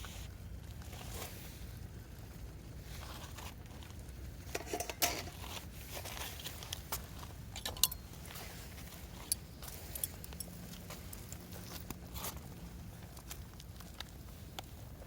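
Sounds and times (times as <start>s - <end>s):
gear clinking and rustling: 3.0s - 14.5s.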